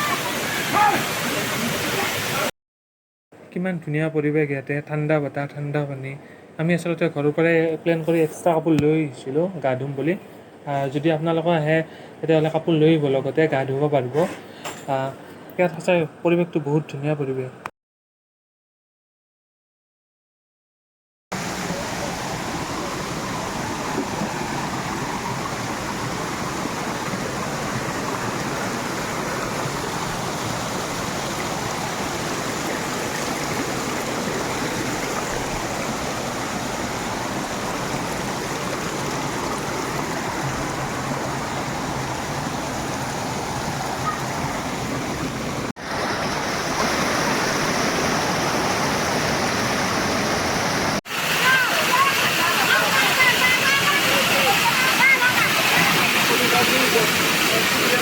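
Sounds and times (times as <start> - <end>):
waterfall rushing: 0.0 - 2.5, 21.4 - 58.0.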